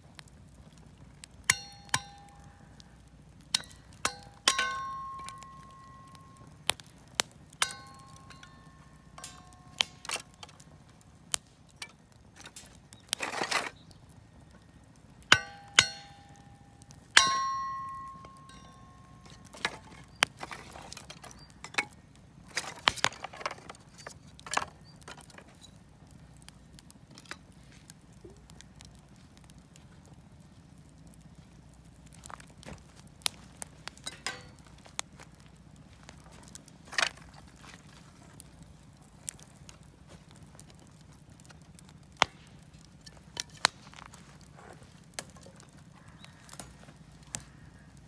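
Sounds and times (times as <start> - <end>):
metal pieces clinking: 7.6 - 10.6
scraping and rustling: 11.8 - 14.0, 18.2 - 25.8.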